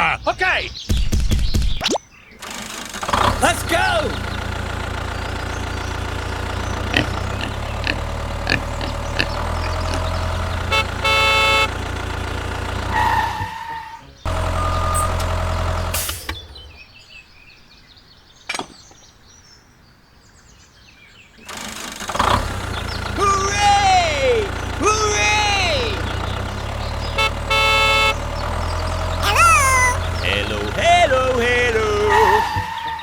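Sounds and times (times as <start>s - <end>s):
vehicle engine running: 2.4s - 16.9s, 21.5s - 33.0s
horn sounding: 3.1s - 16.4s, 22.4s - 33.0s.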